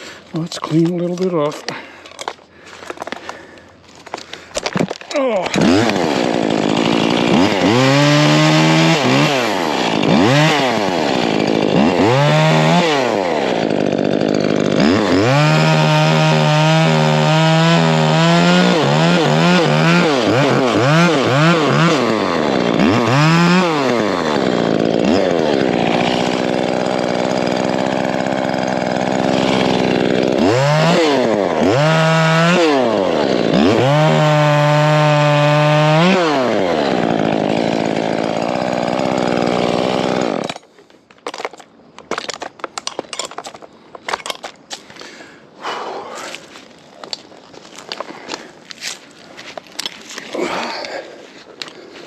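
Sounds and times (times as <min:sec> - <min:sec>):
chainsaw revving: 0:04.1 - 0:40.8, 0:47.9 - 0:52.0.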